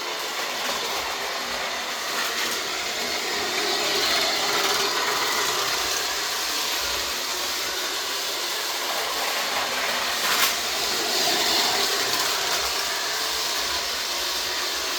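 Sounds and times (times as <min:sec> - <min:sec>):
model train running with hiss: 0:00.0 - 0:14.9.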